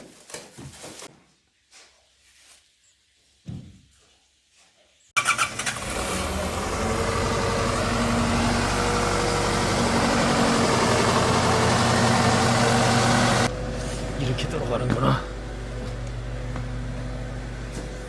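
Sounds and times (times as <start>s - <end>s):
truck engine starting and running: 5.2s - 18.0s.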